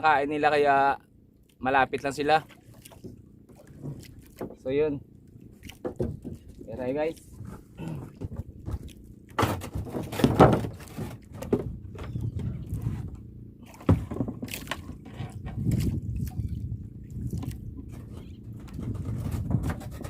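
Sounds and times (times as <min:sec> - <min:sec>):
water splashing against boat hull: 0:01.5 - 0:20.0
knocks and clatter on board: 0:02.9 - 0:04.7, 0:05.7 - 0:13.2, 0:13.8 - 0:15.9, 0:17.9 - 0:20.0.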